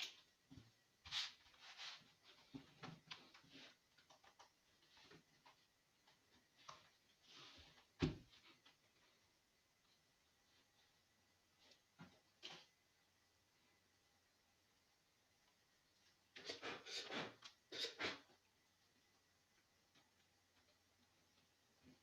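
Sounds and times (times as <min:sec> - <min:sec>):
faint clicks and rustles: 0:00.0 - 0:12.9.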